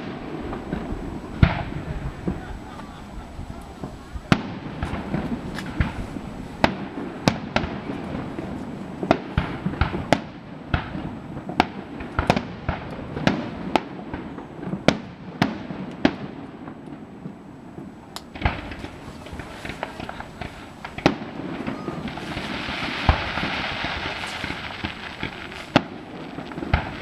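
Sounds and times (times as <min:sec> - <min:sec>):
fireworks bangs: 0:00.0 - 0:27.0.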